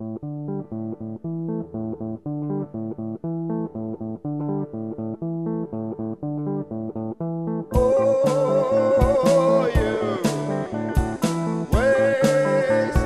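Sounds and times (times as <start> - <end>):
guitar picking notes: 0.0 - 13.0
bass line: 7.7 - 13.0.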